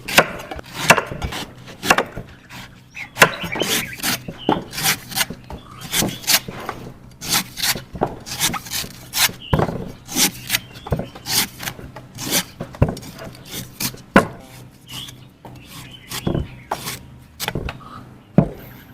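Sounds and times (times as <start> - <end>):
knife scraping coconut: 0.1 - 9.4, 10.0 - 17.6
knife chopping coconut: 7.2 - 17.8.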